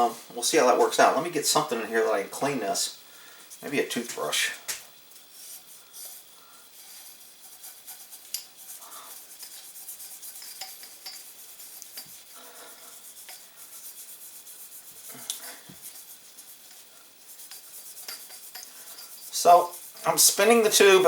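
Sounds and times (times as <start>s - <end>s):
toothbrush scrubbing metal tube: 5.1s - 21.0s.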